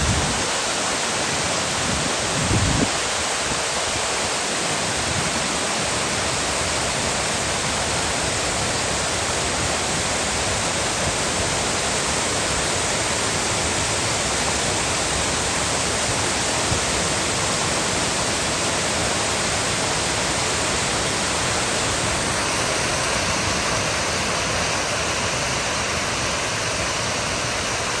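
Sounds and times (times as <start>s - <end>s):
waterfall splashing: 0.0s - 28.0s.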